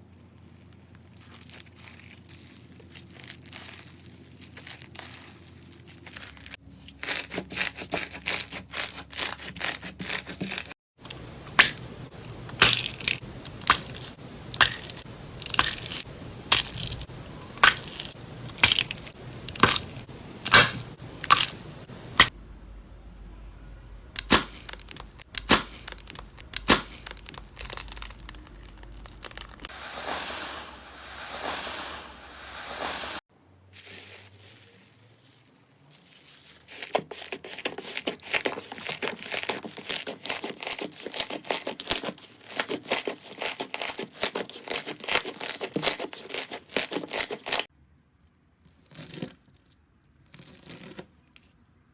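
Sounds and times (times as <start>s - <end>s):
slime crackling and popping: 0.1s - 6.6s, 11.5s - 22.3s, 24.2s - 30.1s
slime hissing: 26.6s - 33.2s.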